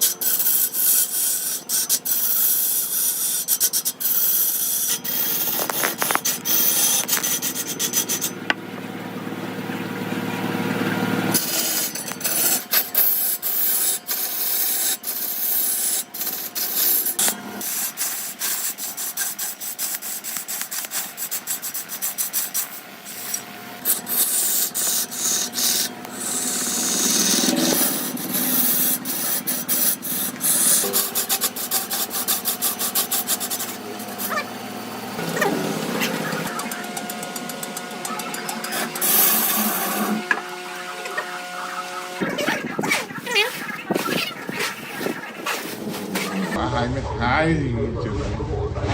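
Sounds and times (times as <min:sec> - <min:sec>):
rasping tool scratching wood: 0:00.0 - 0:08.4, 0:11.3 - 0:34.5, 0:38.6 - 0:41.6, 0:42.2 - 0:46.6.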